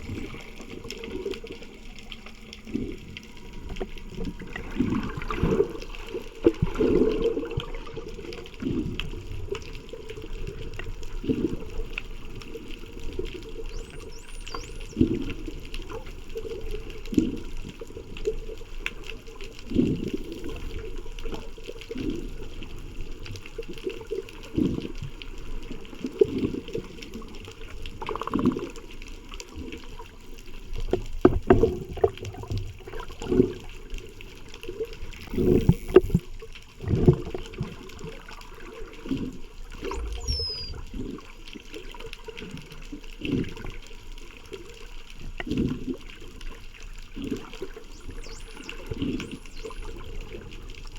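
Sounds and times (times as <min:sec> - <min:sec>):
regulator bubbles gurgling: 0:00.0 - 0:50.9
faint falling whistle: 0:13.7 - 0:15.3, 0:39.8 - 0:41.0, 0:47.9 - 0:50.2.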